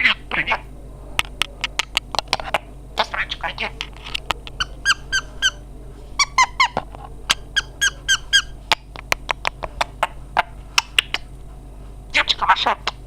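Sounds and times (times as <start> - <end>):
parrot chirping: 0.0 - 0.7, 2.3 - 5.6, 6.2 - 8.9, 12.1 - 13.0
parrot clicking: 1.2 - 5.6, 6.6 - 11.3.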